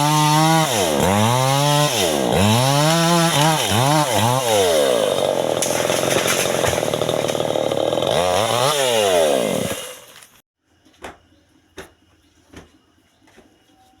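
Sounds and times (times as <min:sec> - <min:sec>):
chainsaw running at high revs: 0:00.0 - 0:10.2.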